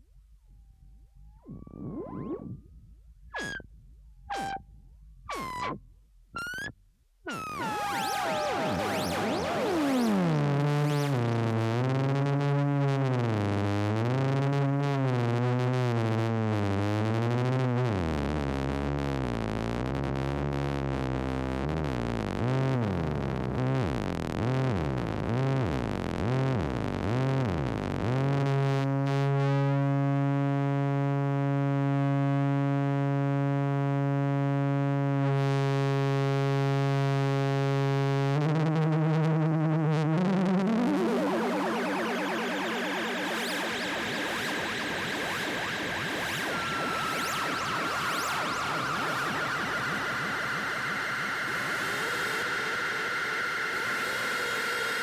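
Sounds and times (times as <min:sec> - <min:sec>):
synthesizer tone: 0:01.4 - 0:02.7, 0:04.3 - 0:04.6, 0:40.6 - 0:55.0.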